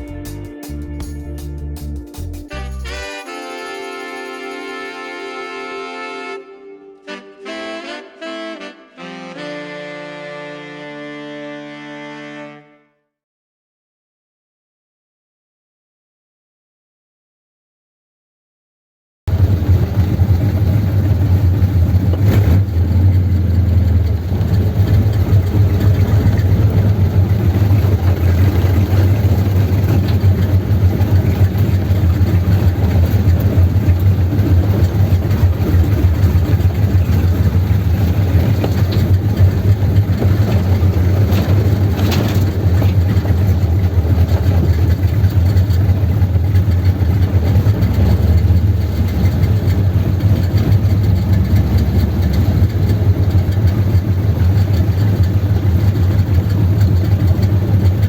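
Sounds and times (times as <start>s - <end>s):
car engine with deep exhaust rumble: 19.3s - 58.0s.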